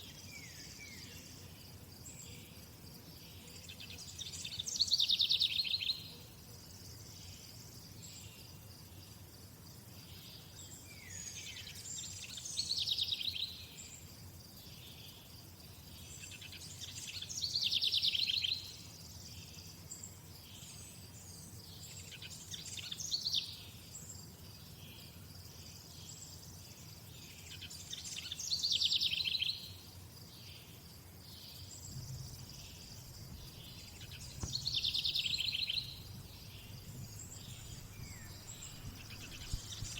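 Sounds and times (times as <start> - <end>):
faint chirping: 14.6 - 39.9
songbird trilling: 31.9 - 39.9.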